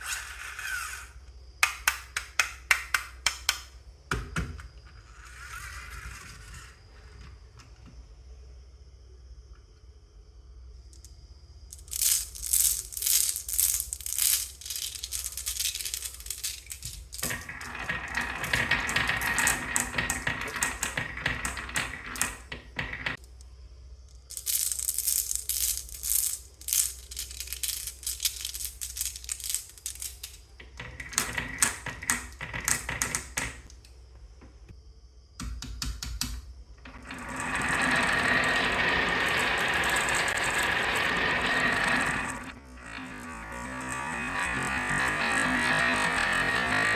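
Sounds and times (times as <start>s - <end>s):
toy gears whirring: 0.0s - 1.2s, 11.7s - 22.5s, 24.3s - 30.4s, 37.0s - 46.9s
marbles rolling: 0.0s - 2.2s, 11.7s - 23.2s, 24.1s - 33.7s, 36.8s - 46.9s
marbles clattering down wooden track: 11.7s - 23.2s, 24.3s - 33.7s, 36.9s - 46.9s.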